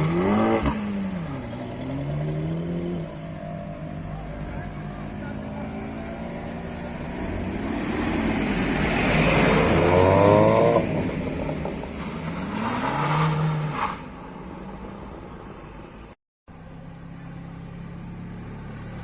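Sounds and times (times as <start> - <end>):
car engine accelerating hard: 4.0 - 13.7.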